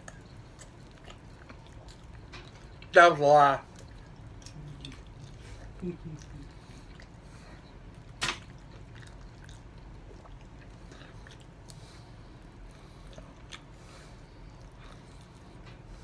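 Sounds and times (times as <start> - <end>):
person chewing and biting: 0.0 - 2.8, 8.2 - 11.9, 13.0 - 13.8.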